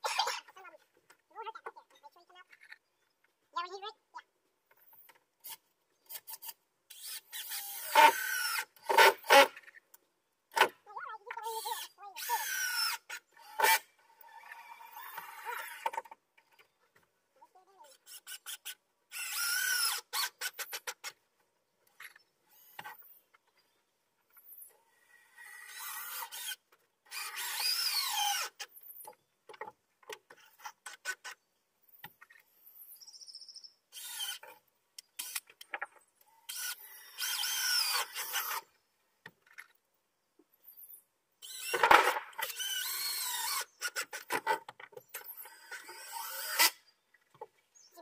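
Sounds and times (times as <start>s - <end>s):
power drill driving screws: 5.4s - 9.6s, 11.6s - 16.0s, 18.0s - 21.1s, 25.0s - 29.0s, 33.9s - 34.6s, 35.2s - 35.6s, 36.4s - 38.7s, 41.4s - 44.5s, 45.1s - 46.8s.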